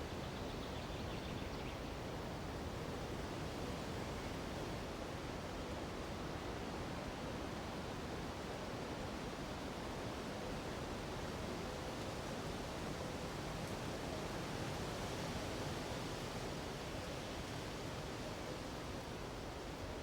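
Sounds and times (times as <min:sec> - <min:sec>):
wind through treetops: 0:00.0 - 0:04.9.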